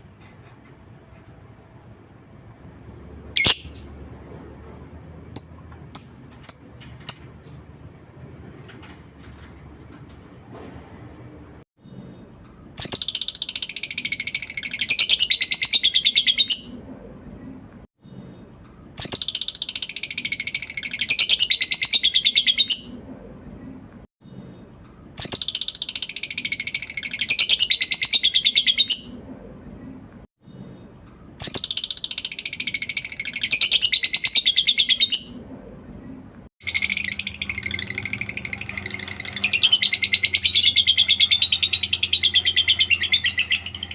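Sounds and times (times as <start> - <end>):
lovebird chattering trill: 3.4 - 3.8, 5.4 - 7.3, 36.6 - 43.9.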